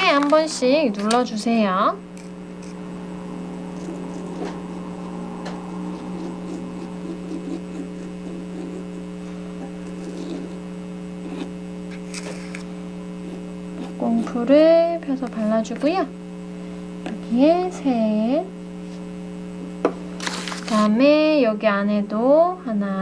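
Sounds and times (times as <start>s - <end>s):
electrical hum: 0.0s - 23.0s.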